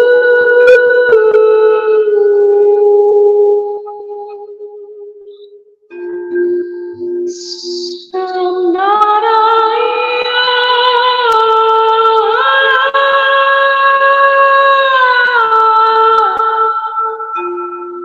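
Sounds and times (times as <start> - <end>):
woman singing without words: 0.0 - 4.4, 7.3 - 17.4.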